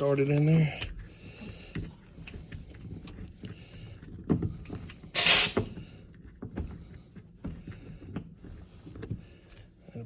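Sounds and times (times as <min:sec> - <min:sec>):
compressed air hiss: 0:05.2 - 0:05.7.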